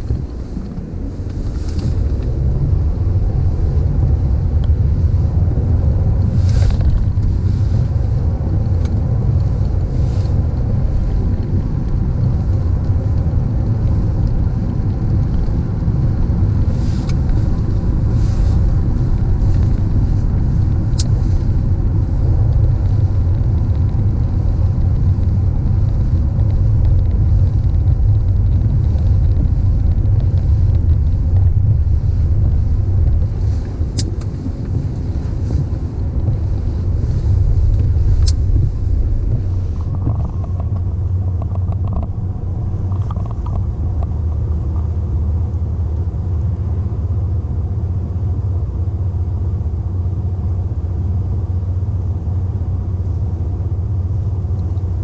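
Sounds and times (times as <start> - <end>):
car engine and tyre rumble: 0.0 - 55.0.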